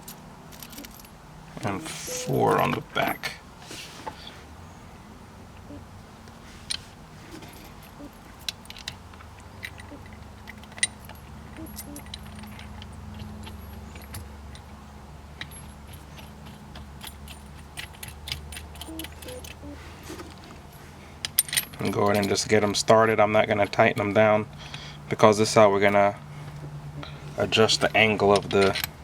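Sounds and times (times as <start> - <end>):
low steady hum: 0.0 - 29.0
metallic clicks of bolts: 27.8 - 29.0.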